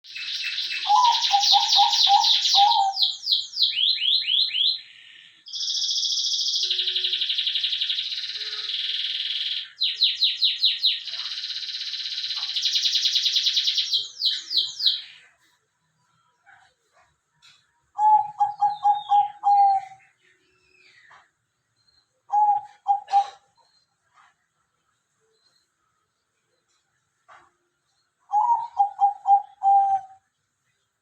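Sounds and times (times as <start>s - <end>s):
songbird singing rapid trills: 0.0s - 15.2s.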